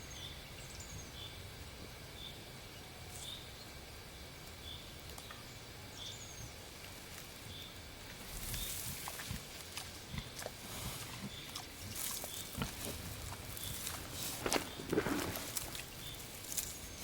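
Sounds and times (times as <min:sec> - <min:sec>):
rustling in dry forest litter: 0:06.5 - 0:17.0.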